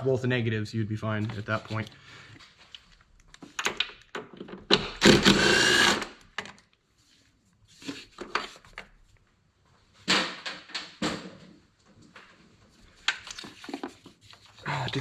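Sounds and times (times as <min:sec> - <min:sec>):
power tool bursts: 0:05.0 - 0:06.2.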